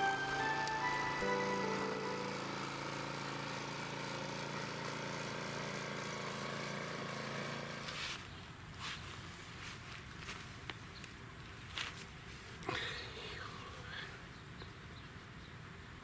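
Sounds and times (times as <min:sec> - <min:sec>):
motor humming: 0:00.0 - 0:08.0.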